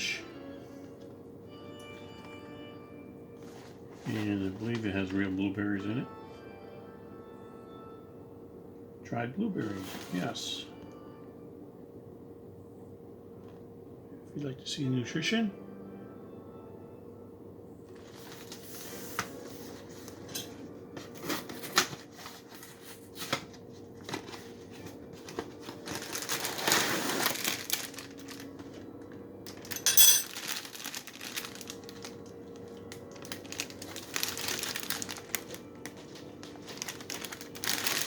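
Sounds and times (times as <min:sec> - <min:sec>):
plastic bag crinkling: 0:25.3 - 0:28.8, 0:29.5 - 0:38.0.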